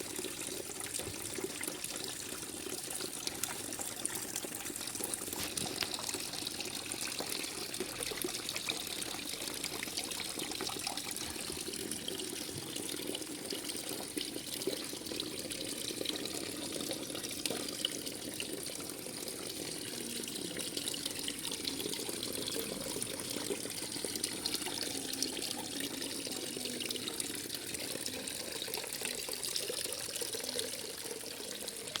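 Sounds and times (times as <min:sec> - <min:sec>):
water trickling in small fountain: 0:00.0 - 0:32.0.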